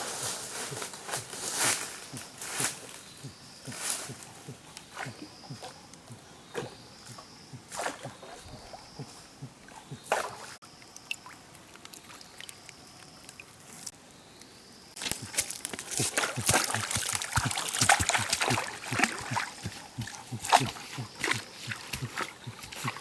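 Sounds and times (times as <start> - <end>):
water splashing and sloshing: 3.6 - 13.9, 14.9 - 23.0.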